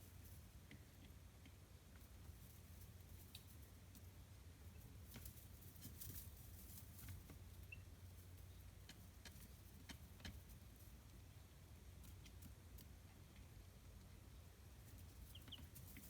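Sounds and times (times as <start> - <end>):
chicks pecking and scratching: 0.0 - 16.0
chick peeping: 7.5 - 7.9, 14.7 - 16.0.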